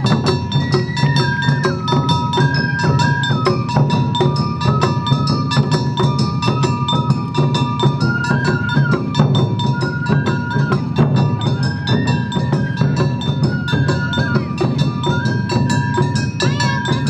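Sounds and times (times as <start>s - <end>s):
bamboo flute melody: 0.0s - 17.0s
rapid drumming: 0.0s - 17.0s.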